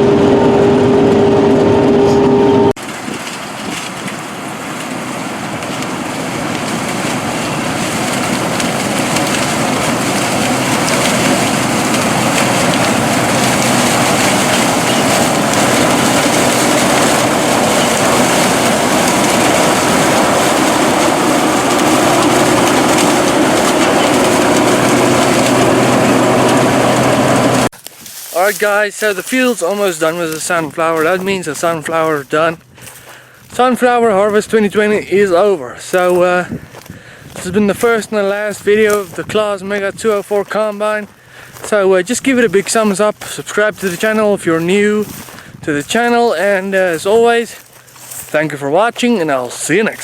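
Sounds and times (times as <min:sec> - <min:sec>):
steady engine tone: 0:00.0 - 0:02.8, 0:04.2 - 0:27.7
combine harvester rushing noise: 0:00.0 - 0:50.0.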